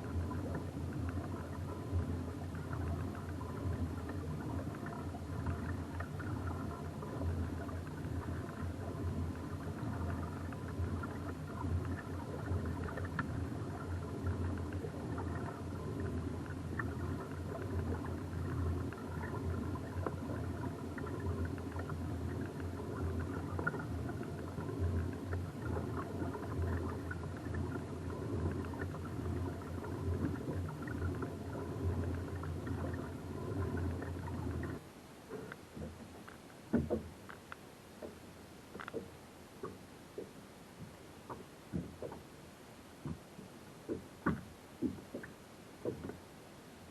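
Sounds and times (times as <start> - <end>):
faint knocks: 35.3 - 37.4, 38.0 - 42.2.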